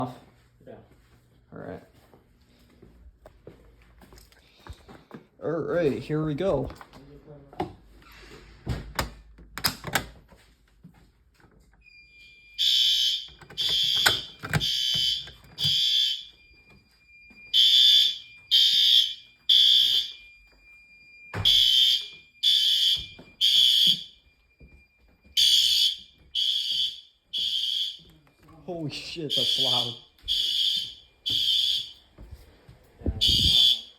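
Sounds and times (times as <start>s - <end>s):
fire alarm horn blasts: 11.8s - 24.5s, 25.3s - 32.2s, 33.2s - 33.9s.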